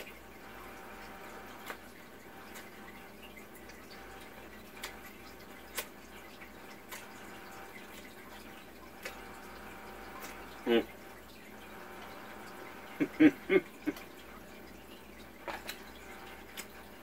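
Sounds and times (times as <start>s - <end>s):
wet sticky eating clicks: 4.7s - 6.0s.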